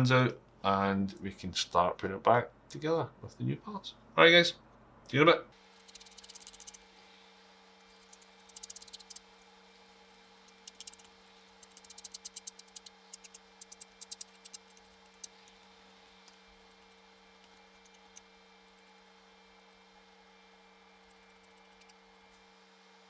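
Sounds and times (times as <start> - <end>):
steady low hum: 2.4 - 23.0
small clicks and scratches: 5.8 - 6.9, 7.8 - 22.4.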